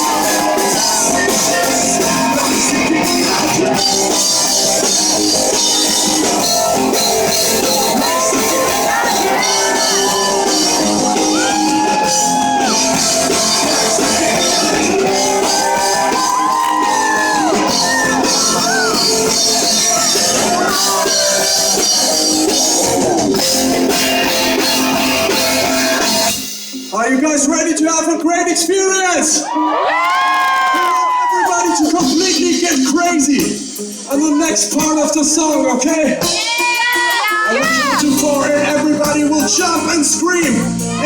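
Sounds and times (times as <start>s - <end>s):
electric guitars: 0.0s - 26.9s
drum kit: 0.0s - 28.6s, 29.4s - 41.0s.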